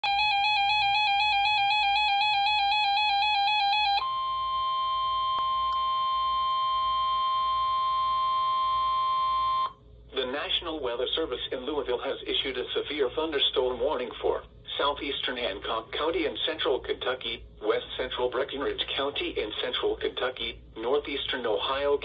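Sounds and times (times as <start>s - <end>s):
electronic alarm warbling: 0.0s - 9.7s.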